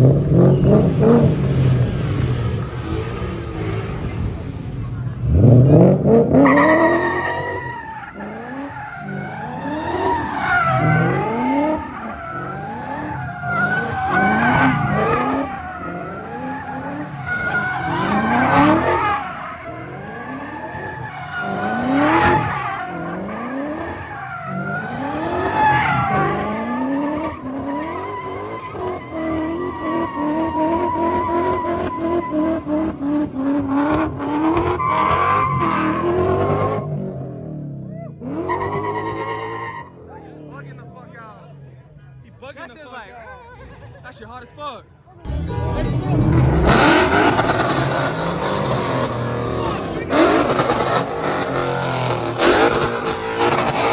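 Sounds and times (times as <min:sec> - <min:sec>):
car engine revving: 0:00.0 - 0:42.2, 0:45.3 - 0:53.9
tyres squealing: 0:06.4 - 0:36.9.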